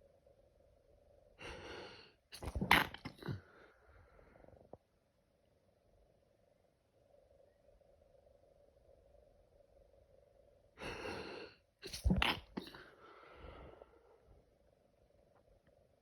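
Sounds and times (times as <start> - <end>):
person sneezing: 2.4 - 3.4, 10.8 - 12.8.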